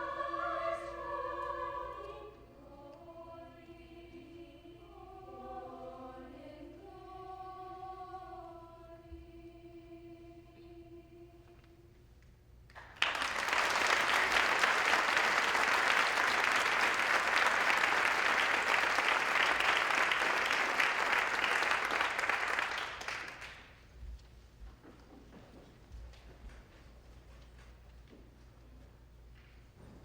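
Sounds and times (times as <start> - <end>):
audience applauding: 12.8 - 23.7.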